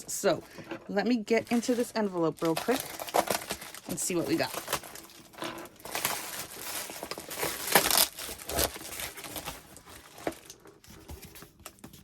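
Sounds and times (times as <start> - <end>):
envelope crinkling and tearing: 1.4 - 12.0.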